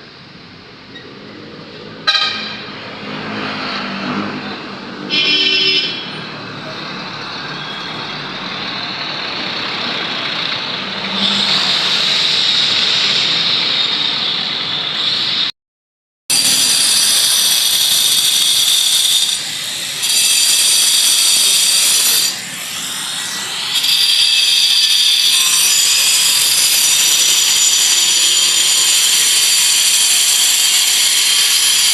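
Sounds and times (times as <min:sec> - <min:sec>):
power tool whining: 0:07.5 - 0:15.5, 0:16.3 - 0:31.9.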